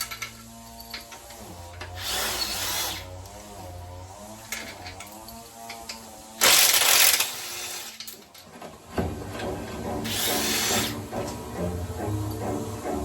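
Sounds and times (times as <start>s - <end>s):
power tool running: 0.0s - 13.0s
loud burst of hiss: 10.1s - 11.0s.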